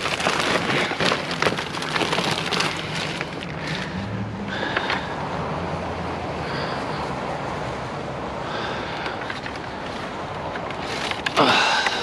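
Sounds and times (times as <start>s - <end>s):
scrap clattering in a dumpster: 0.0s - 4.0s.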